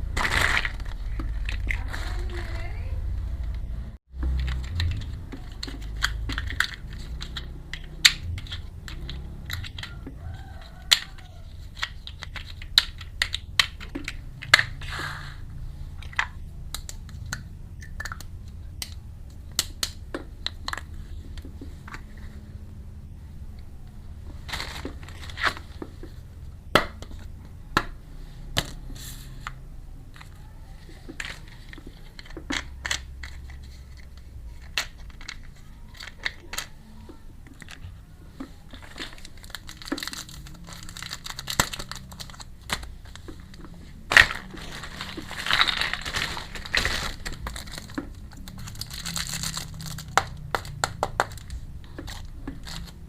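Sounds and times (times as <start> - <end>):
plastic packaging crinkling: 0.1 - 2.7, 24.3 - 25.8, 30.9 - 53.0
plastic toy pieces clicking: 4.3 - 9.9.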